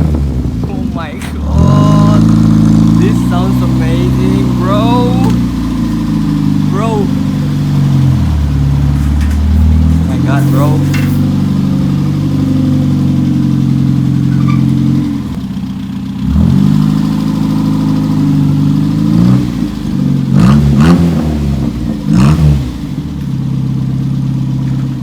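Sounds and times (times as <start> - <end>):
car engine idling and revving: 0.0 - 25.0.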